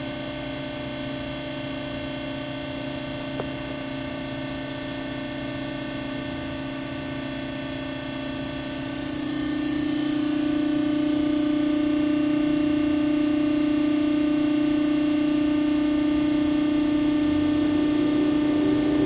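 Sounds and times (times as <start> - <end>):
higher machine tone: 6.6 - 19.0
hydraulic pump whining: 8.7 - 19.0.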